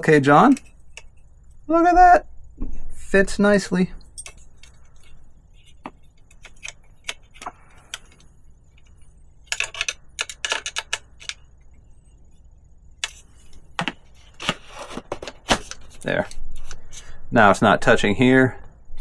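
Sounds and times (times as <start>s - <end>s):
light clicks and metallic rattles: 3.5s - 11.8s.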